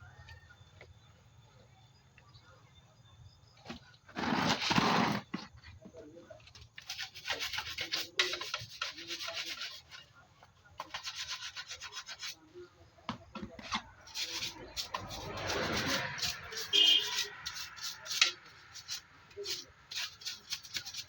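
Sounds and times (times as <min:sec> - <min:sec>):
rapid rubbing strokes: 0:06.7 - 0:12.7, 0:14.0 - 0:21.0.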